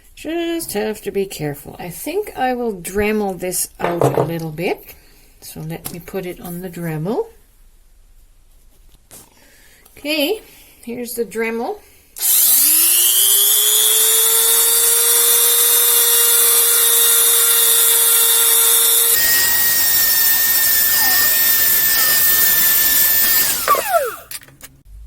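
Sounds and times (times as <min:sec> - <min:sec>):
rotary tool high whine: 0:12.2 - 0:24.5.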